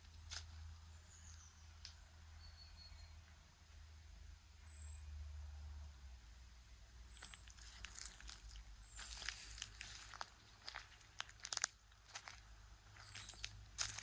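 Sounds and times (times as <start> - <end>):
footsteps crunching on loose ground: 7.0 - 14.0.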